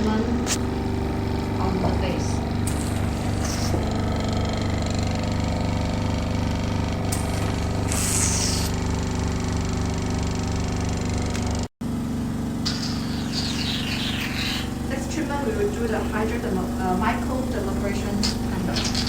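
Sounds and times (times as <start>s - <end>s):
vacuum pump humming: 0.0s - 19.0s
suction hiss: 7.1s - 8.9s.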